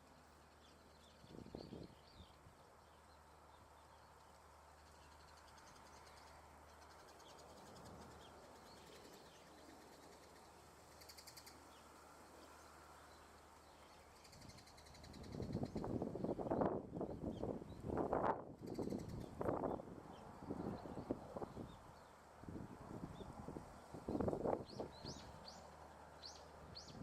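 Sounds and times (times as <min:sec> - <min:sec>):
small birds chirping: 0:00.0 - 0:27.0.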